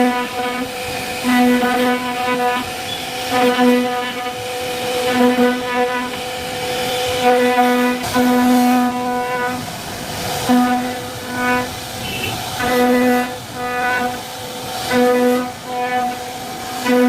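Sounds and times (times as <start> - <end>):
router spindle whining: 2.6 - 3.3.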